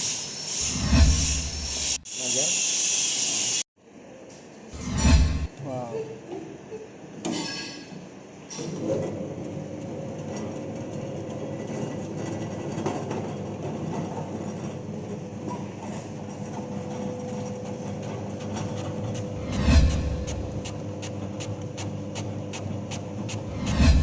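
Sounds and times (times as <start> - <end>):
machine rattling with faint whine: 8.9 - 24.0.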